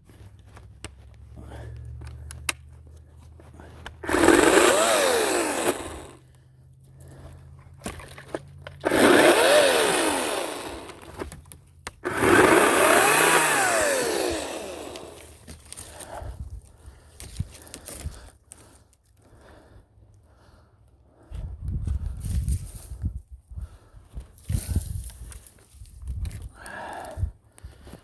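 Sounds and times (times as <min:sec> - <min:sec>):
electric chainsaw revving: 0:04.0 - 0:06.2, 0:08.8 - 0:11.2, 0:12.0 - 0:15.4.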